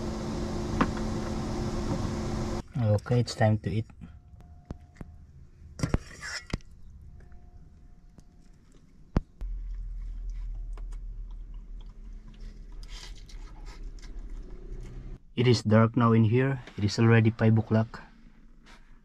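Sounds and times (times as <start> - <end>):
chewing: 8.1 - 15.0
steady low rumble: 9.3 - 12.9.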